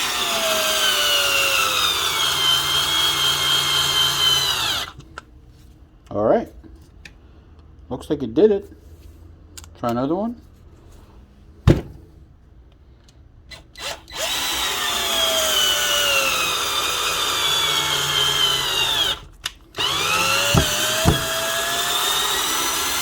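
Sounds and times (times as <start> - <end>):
cordless drill driving screw into wood: 0.0 - 5.0, 13.5 - 23.0
sharp knocks: 11.7 - 12.1, 20.5 - 21.5.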